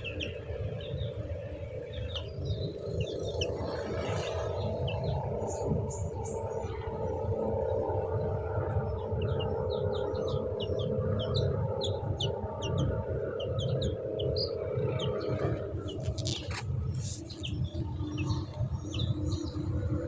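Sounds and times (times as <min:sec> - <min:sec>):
low steady hum: 0:00.0 - 0:20.0
baby chicks peeping: 0:09.2 - 0:20.0
rustling: 0:15.9 - 0:17.5.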